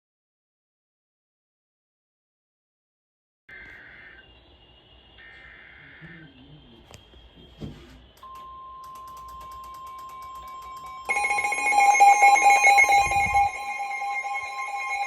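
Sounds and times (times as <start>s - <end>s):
pulsing ringing alarm: 3.5s - 15.0s
steady single-pitch alarm beep: 4.0s - 15.0s.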